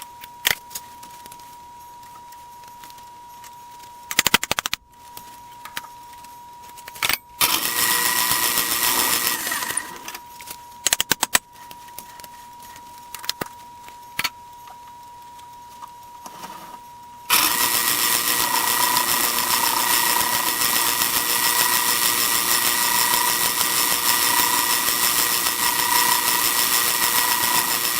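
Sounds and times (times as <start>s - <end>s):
faint high whine: 0.0s - 4.1s, 4.9s - 19.9s
machine running: 7.0s - 10.5s, 17.3s - 27.9s.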